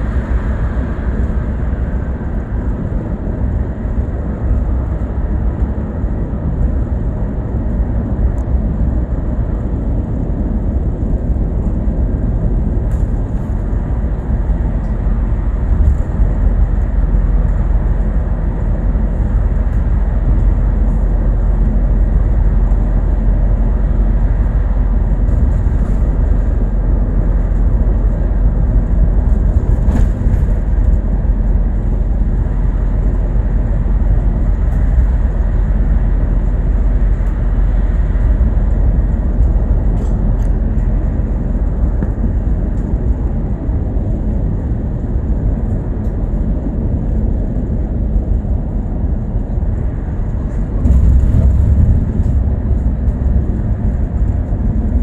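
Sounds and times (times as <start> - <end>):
bus engine and road rumble: 0.0 - 55.0.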